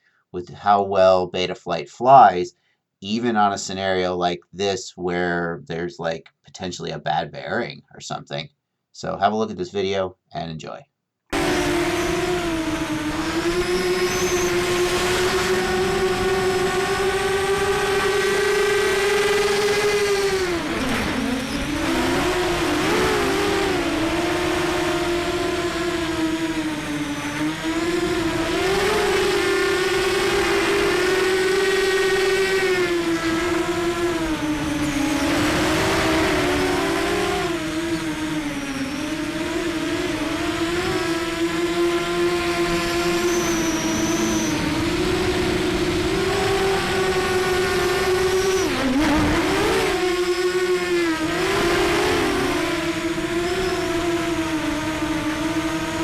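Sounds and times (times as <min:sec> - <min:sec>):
quadcopter motors whining: 0:11.3 - 0:56.0.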